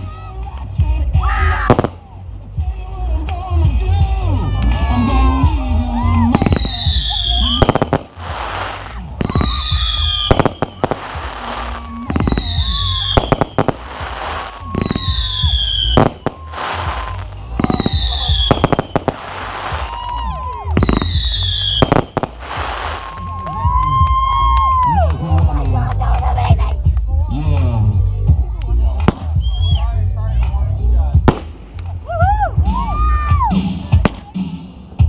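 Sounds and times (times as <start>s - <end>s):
fireworks bursting: 1.7s - 2.1s, 6.3s - 23.5s, 29.0s - 29.8s, 31.2s - 32.0s.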